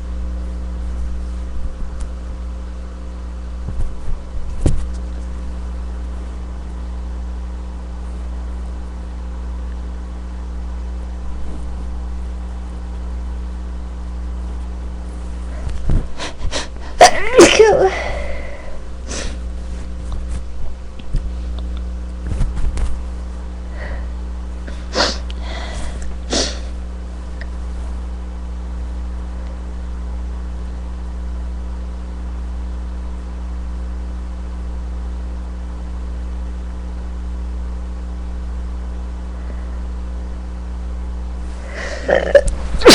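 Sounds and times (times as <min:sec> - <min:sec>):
steady low hum: 0:00.0 - 0:42.9
person sneezing: 0:16.2 - 0:19.4, 0:24.7 - 0:26.7, 0:41.6 - 0:42.9
sniffs: 0:18.0 - 0:20.0, 0:23.8 - 0:26.8.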